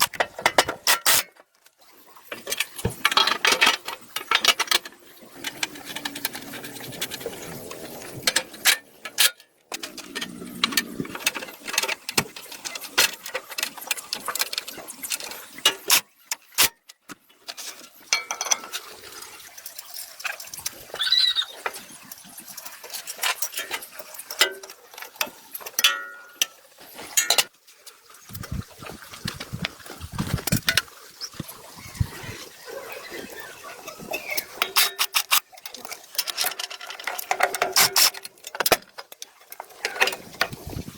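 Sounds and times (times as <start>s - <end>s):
knocks and clanks on metal: 0.0s - 1.2s
high squeal: 21.0s - 21.6s.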